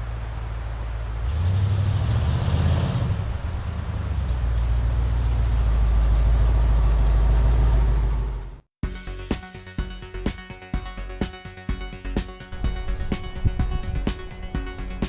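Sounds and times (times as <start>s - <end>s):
vehicle engine rumbling: 0.0s - 8.6s.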